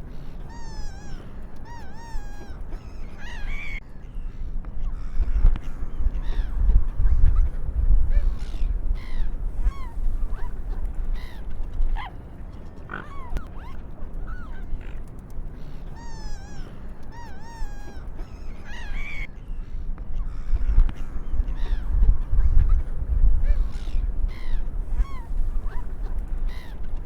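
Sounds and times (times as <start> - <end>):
gulls calling: 0.0 - 27.0.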